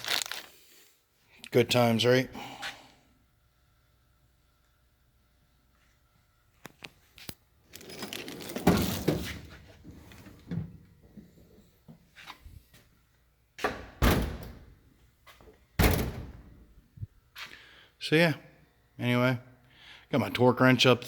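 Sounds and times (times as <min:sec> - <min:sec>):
drawer sliding with contents rattling: 0:07.7 - 0:10.7
steel drawers banging shut: 0:07.8 - 0:10.7, 0:13.6 - 0:14.7, 0:15.8 - 0:16.5.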